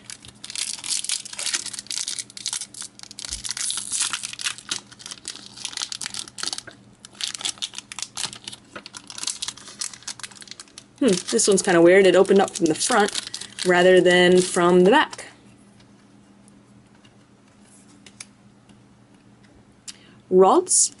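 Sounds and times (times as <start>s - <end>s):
foil wrapper tearing and crinkling: 0.0s - 15.2s.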